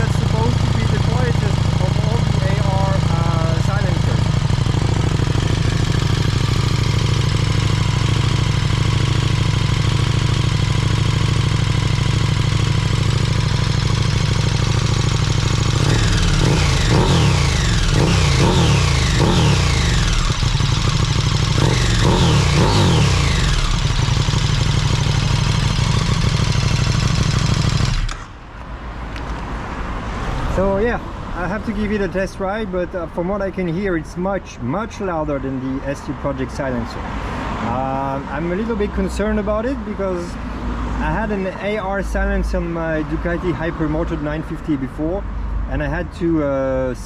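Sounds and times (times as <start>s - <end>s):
motorcycle engine revving: 0.0s - 28.4s
motorcycle engine idling: 0.0s - 28.5s.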